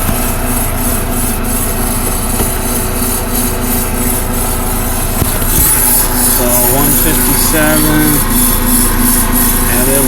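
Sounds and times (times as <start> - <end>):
machine hum and hiss: 0.0 - 10.0.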